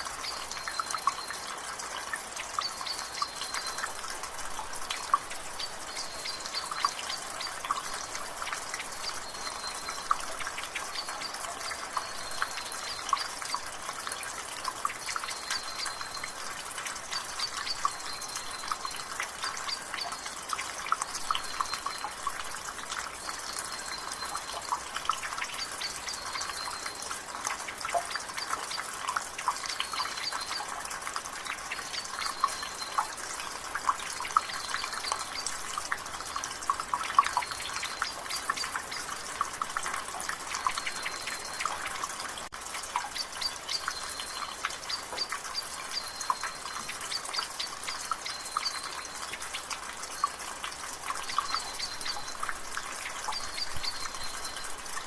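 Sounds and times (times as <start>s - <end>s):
drizzling rain: 0.0s - 55.0s
water dripping from a gutter: 0.0s - 55.0s
bird chirping: 43.0s - 49.2s, 51.2s - 52.6s.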